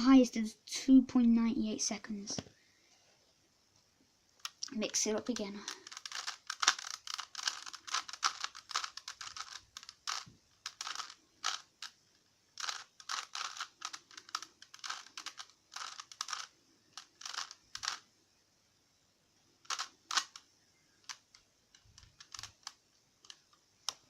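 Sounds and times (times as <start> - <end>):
plastic puzzle cube clicking: 4.4 - 18.0, 19.6 - 24.0.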